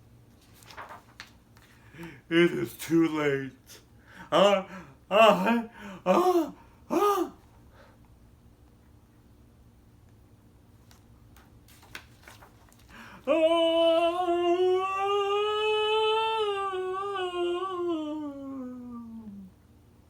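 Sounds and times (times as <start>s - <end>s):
man holding a long sung note: 4.2s - 7.4s, 13.1s - 19.6s.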